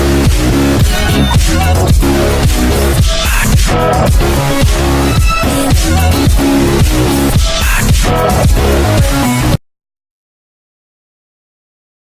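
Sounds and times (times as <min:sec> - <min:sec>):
electronic music with heavy bass: 0:00.0 - 0:09.6.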